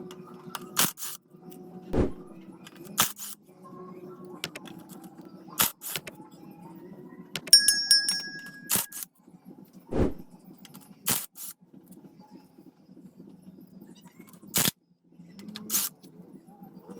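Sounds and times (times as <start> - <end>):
dull thud: 2.0 - 2.4, 9.9 - 10.3
metal tools clinking: 7.6 - 9.0
metallic ringing strike: 7.6 - 9.0.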